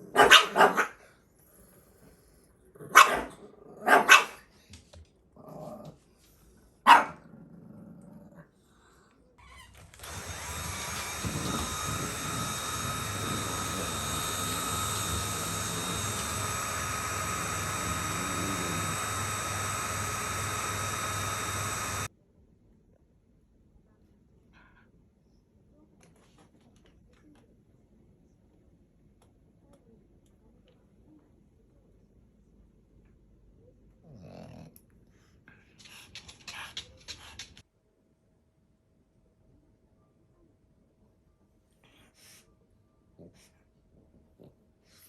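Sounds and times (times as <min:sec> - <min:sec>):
dog barking sharply: 0:00.1 - 0:01.0, 0:02.9 - 0:03.3, 0:03.9 - 0:04.4, 0:06.9 - 0:07.2
electric motor whining: 0:09.8 - 0:22.1.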